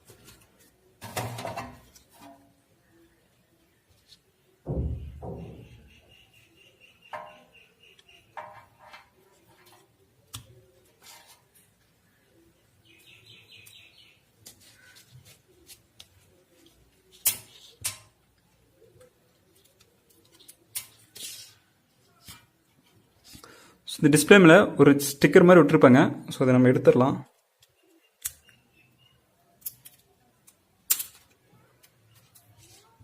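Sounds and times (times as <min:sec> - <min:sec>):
electronic parts clicking: 0:29.6 - 0:32.5.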